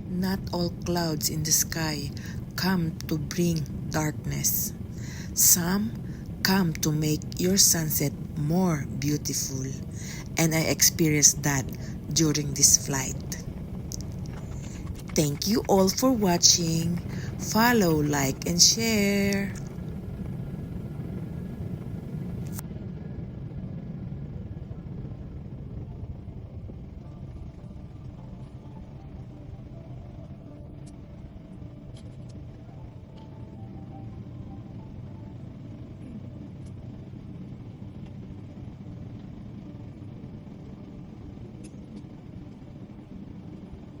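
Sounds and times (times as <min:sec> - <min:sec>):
airliner cabin rumble: 0:00.0 - 0:22.6.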